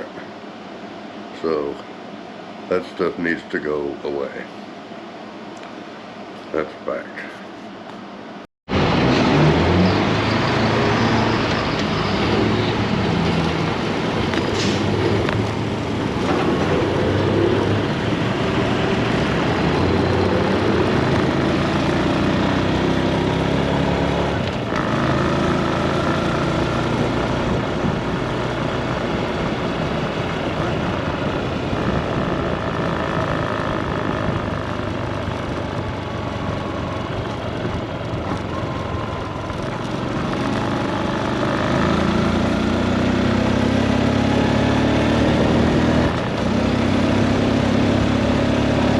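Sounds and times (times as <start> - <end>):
wind and road noise: 0.0 - 48.9
motorcycle engine running: 15.2 - 48.9.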